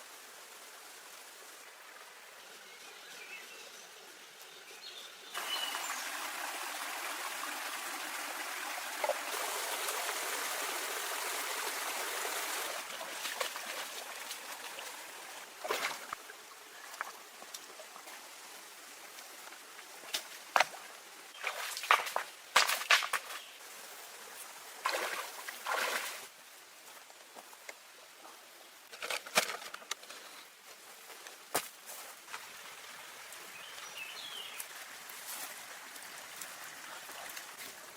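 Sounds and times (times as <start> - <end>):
stream water rushing: 5.3 - 27.0, 32.2 - 37.9.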